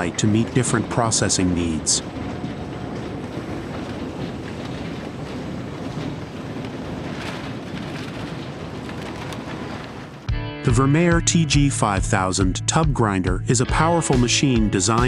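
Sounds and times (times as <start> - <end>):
wood crackling as it breaks: 2.1 - 10.3.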